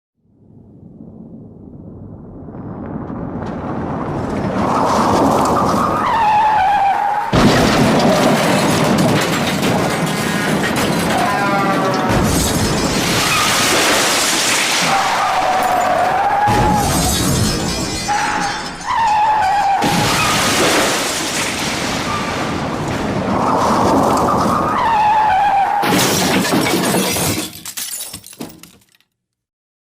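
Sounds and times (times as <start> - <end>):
car rushing: 2.6 - 25.8
crunching debris clatter: 2.6 - 29.1
car crash impact: 7.3 - 11.4, 12.1 - 24.9, 25.8 - 28.9
glass shattering: 7.3 - 11.4, 12.1 - 22.4, 25.8 - 29.1.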